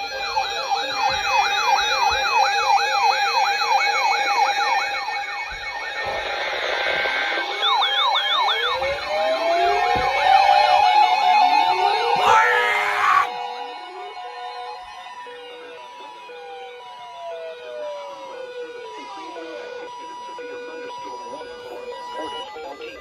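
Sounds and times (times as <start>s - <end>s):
electronic sirens yelping: 0.0s - 13.3s.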